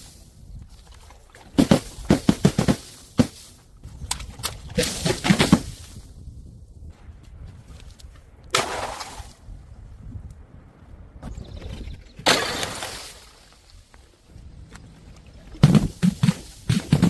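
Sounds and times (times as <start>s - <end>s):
objects smashing and crunching: 1.4s - 3.6s, 4.7s - 6.0s, 12.2s - 13.5s, 15.6s - 17.0s
crash: 12.2s - 13.5s.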